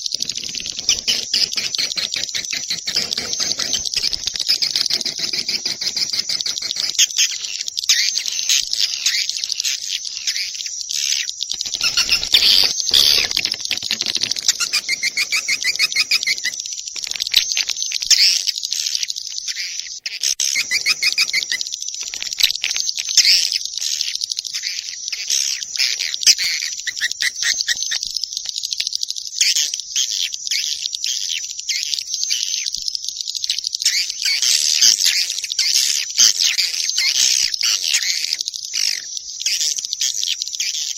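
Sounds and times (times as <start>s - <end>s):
swiftlets twittering and chirping: 0.0s - 40.9s
fast buzzing trills: 11.6s - 16.6s.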